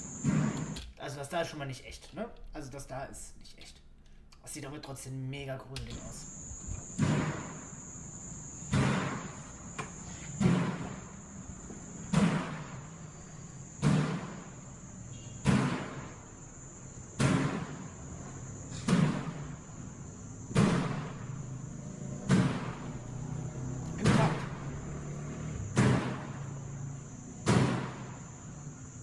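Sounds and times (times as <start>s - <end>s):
heavy thuds: 0.0s - 0.8s, 6.2s - 7.8s, 8.6s - 28.4s.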